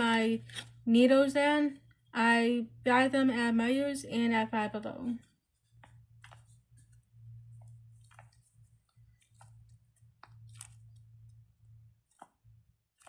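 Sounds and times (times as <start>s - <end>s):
low steady hum: 0.0s - 13.0s
fidget toy squishes and clicks: 5.7s - 13.0s.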